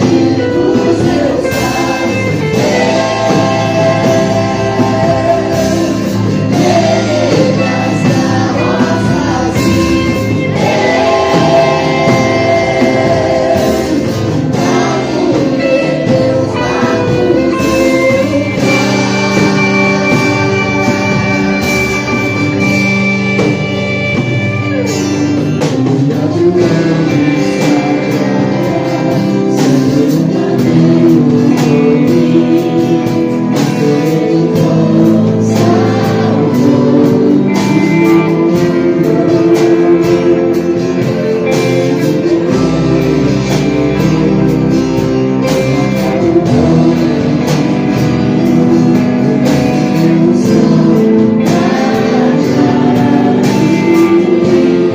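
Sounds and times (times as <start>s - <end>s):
singing: 0.0s - 22.4s
guitar: 0.0s - 54.9s
steady drum beat: 0.0s - 54.9s.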